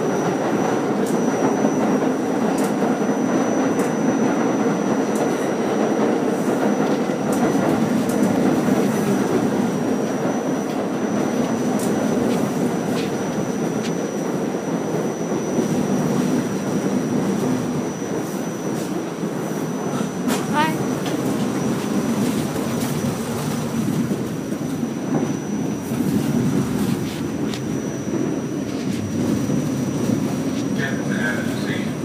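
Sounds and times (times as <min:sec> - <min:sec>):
high-pitched whine: 0:00.0 - 0:32.0
wheels rumbling on rail: 0:00.0 - 0:32.0.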